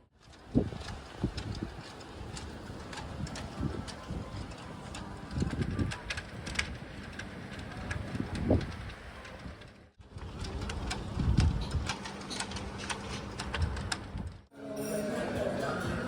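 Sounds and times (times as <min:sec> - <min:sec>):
strong wind buffeting microphone: 0:00.3 - 0:12.0, 0:13.3 - 0:14.5.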